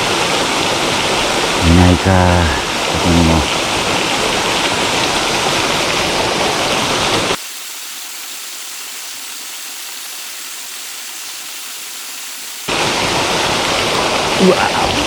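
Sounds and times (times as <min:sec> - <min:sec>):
waterfall rushing: 0:00.0 - 0:07.4, 0:12.7 - 0:15.0
thin hiss of water: 0:07.4 - 0:12.7.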